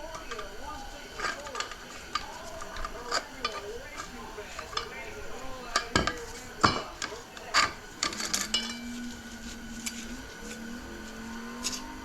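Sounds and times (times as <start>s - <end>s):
metal parts clinking: 0.0s - 9.1s
faint steady hum: 0.0s - 12.0s.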